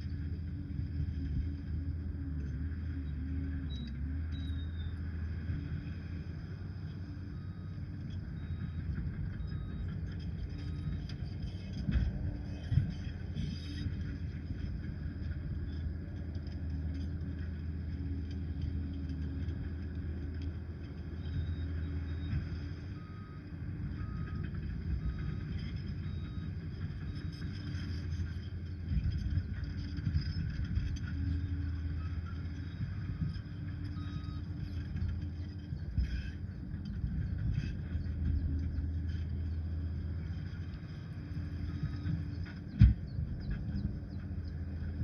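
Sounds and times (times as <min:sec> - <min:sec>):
diesel engine droning: 0:00.0 - 0:45.0
reversing alarm beeps: 0:03.0 - 0:05.0, 0:06.8 - 0:14.0, 0:21.1 - 0:28.3, 0:31.2 - 0:35.0, 0:41.3 - 0:43.9.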